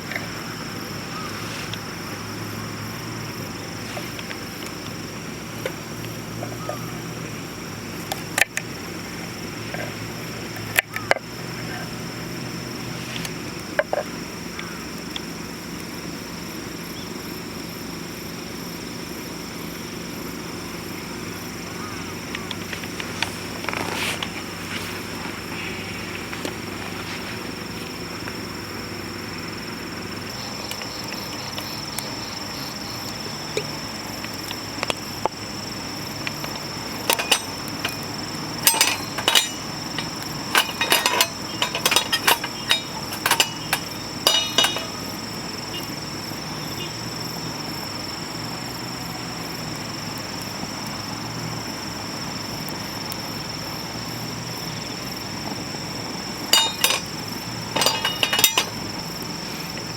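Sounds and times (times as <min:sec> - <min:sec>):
steady background hiss: 0:00.0 - 0:59.9
metal utensils clinking on frying pan: 0:36.5 - 0:45.1, 0:56.5 - 0:58.9.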